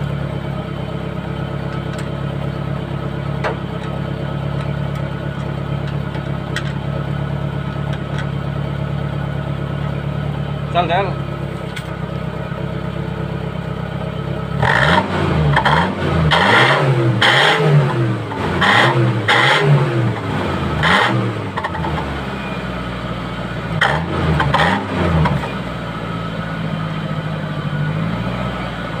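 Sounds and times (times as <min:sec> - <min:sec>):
car engine idling with deep growl: 0:00.0 - 0:29.0
car engine revving: 0:14.3 - 0:29.0.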